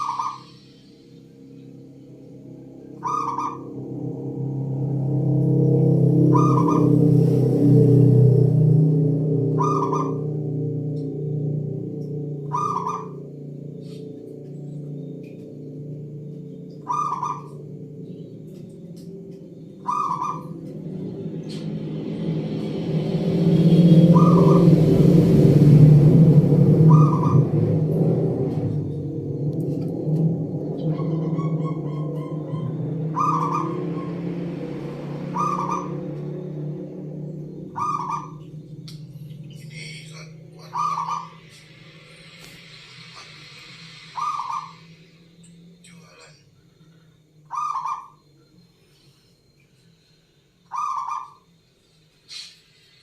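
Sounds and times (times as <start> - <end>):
dove calling: 0.0 - 1.1, 2.4 - 8.4, 9.2 - 49.2, 50.7 - 51.5
low hum: 0.0 - 53.0.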